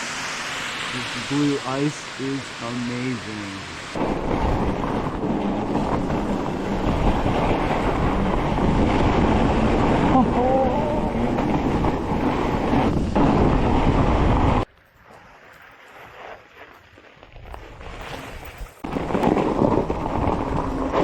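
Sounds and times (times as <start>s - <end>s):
wind buffeting microphone: 3.9s - 14.7s.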